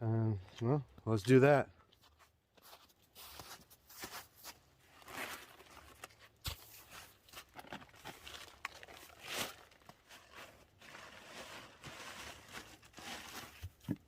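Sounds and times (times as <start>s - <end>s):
footsteps: 0.4s - 5.5s
rustling scuffs: 2.0s - 5.5s.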